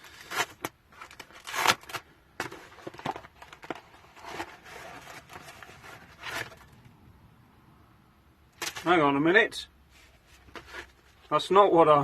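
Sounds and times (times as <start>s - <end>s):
packaging rustling: 0.0s - 6.8s.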